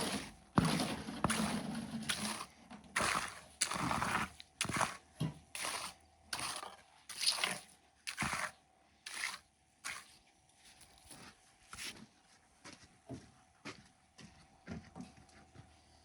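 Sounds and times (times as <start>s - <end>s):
hand tool scraping wet concrete: 0.0s - 10.2s.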